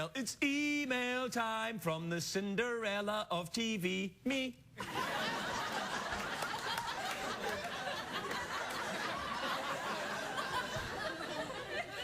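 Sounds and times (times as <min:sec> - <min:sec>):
studio audience laughing: 0:04.8 - 0:12.0.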